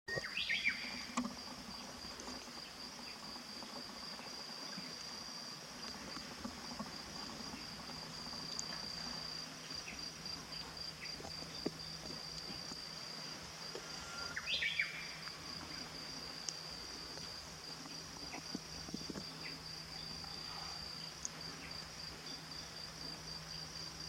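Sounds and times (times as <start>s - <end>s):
insect high-pitched trill: 0.1s - 24.0s
faint chirps: 10.6s - 18.4s, 19.2s - 22.5s.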